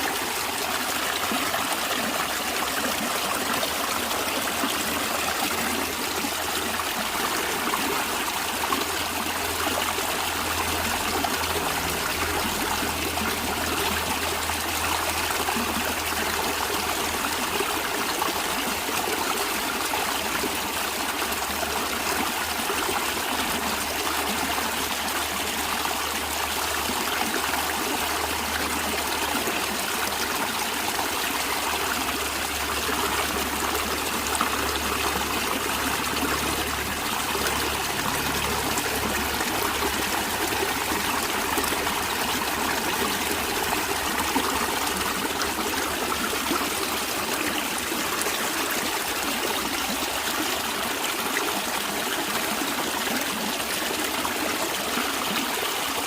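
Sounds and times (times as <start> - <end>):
stream splashing over rocks: 0.0 - 56.0.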